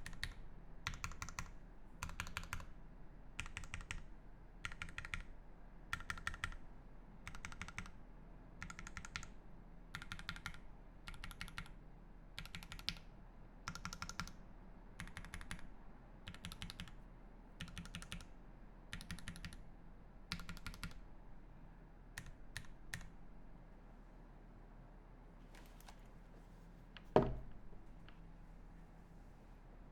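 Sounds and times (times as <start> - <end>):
mechanical keyboard typing: 0.0 - 2.7, 3.4 - 4.0, 4.6 - 5.3, 5.9 - 6.6, 7.3 - 8.0, 8.6 - 9.3, 9.9 - 11.8, 12.4 - 13.0, 13.7 - 14.4, 15.0 - 15.7, 16.3 - 17.0, 17.6 - 18.3, 18.9 - 19.6, 20.3 - 21.0.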